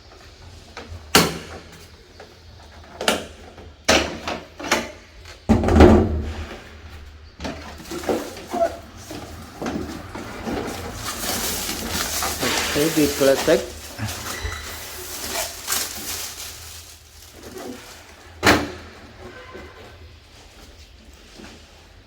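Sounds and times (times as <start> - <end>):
packaging scraping and rustling: 6.3 - 22.0.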